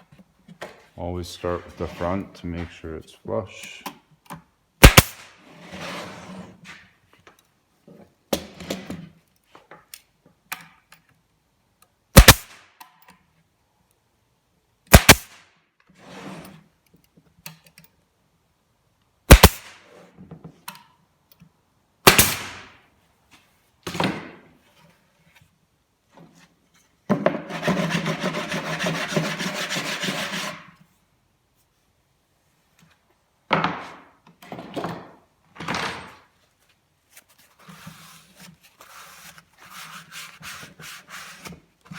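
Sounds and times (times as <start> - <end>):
staple gun firing: 4.8 - 5.2, 12.2 - 12.5, 19.3 - 19.7.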